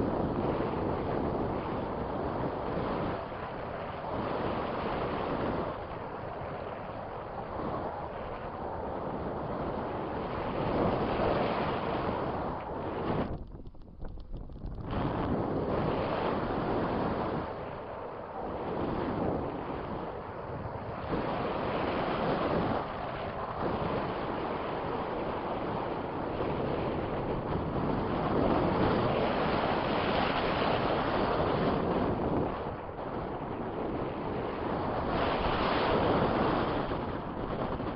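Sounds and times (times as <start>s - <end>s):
strong wind buffeting microphone: 0.0s - 37.9s.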